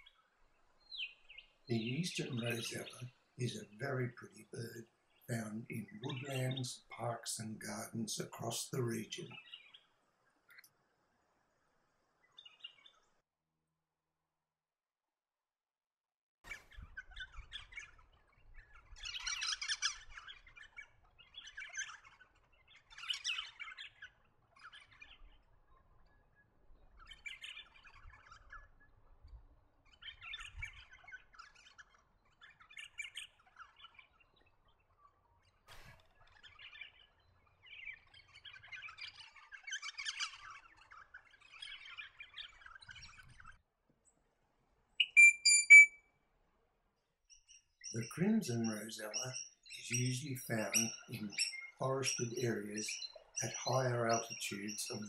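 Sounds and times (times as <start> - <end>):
parrots chattering calls: 39.7 - 42.7, 45.0 - 45.9.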